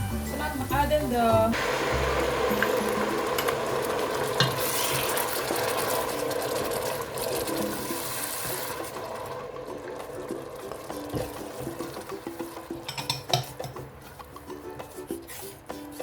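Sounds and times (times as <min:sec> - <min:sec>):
food sizzling in hot oil: 0:00.0 - 0:13.8
spoon stirring in a pot: 0:09.7 - 0:16.0.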